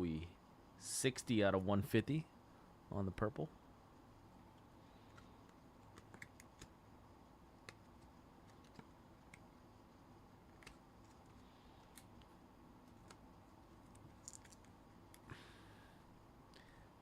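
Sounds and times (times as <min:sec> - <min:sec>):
trading cards clicking: 0:05.1 - 0:06.8, 0:07.6 - 0:09.5.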